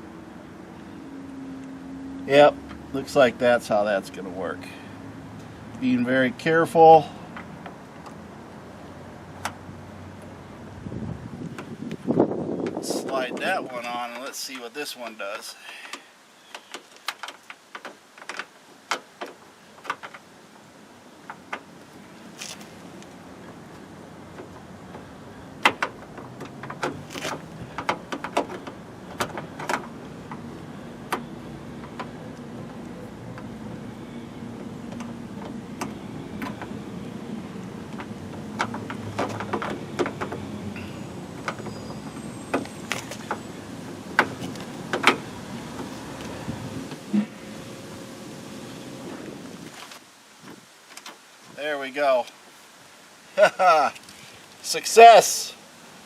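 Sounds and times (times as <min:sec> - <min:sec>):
low steady hum: 0:44.9 - 0:49.8.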